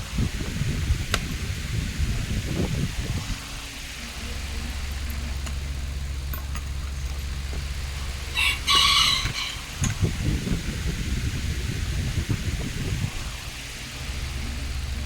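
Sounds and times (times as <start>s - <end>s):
steady low hum: 0.0s - 15.0s
rooster crowing: 8.3s - 9.8s.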